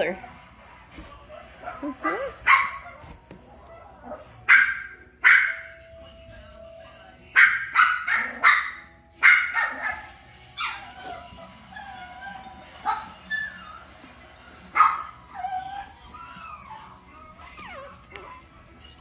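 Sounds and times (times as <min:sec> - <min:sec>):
dog barking: 0:00.1 - 0:05.8, 0:07.0 - 0:11.2, 0:12.8 - 0:13.8, 0:14.7 - 0:15.5
puppies whimpering and yipping: 0:06.7 - 0:19.0.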